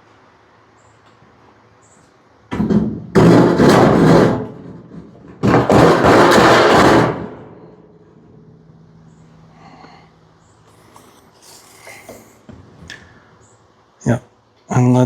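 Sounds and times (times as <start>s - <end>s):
faint steady hum: 7.3s - 15.0s.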